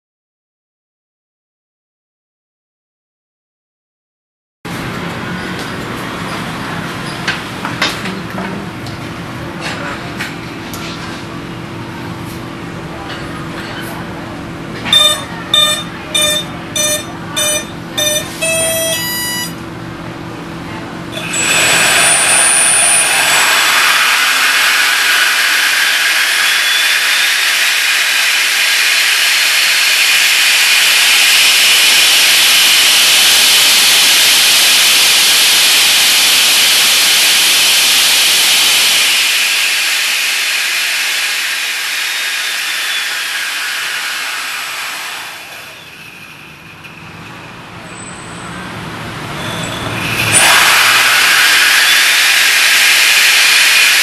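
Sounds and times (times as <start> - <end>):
electric ducted fan whining: 4.7 - 54.0
speed controller beeps: 14.9 - 19.6.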